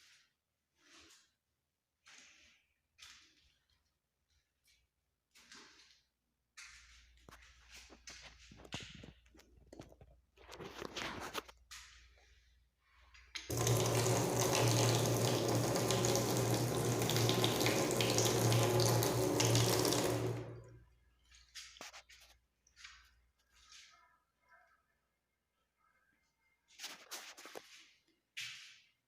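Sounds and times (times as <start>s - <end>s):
water gushing from bathtub tap: 13.4s - 20.8s.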